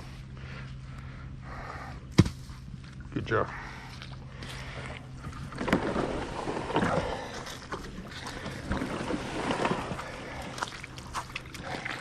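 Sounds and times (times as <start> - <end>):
water splashing against boat: 4.6 - 12.0.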